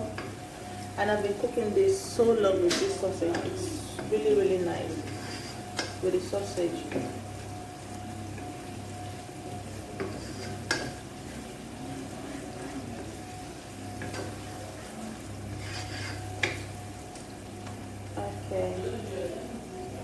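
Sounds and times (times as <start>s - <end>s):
sausage sizzling in a pan: 0.0s - 20.0s
spatula knocking and scraping pan: 5.0s - 6.3s, 9.9s - 11.0s, 15.6s - 16.7s.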